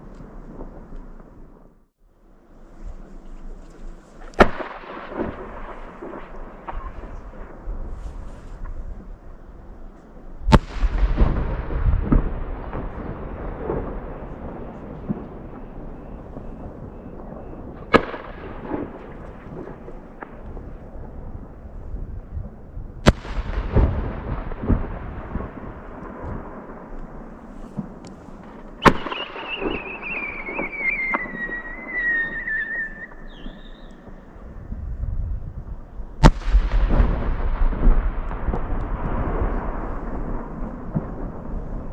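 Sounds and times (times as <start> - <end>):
firework bangs with echo: 4.4 - 8.9, 10.5 - 20.9, 23.0 - 33.8, 36.2 - 41.9
falling whistle tone: 29.1 - 34.0.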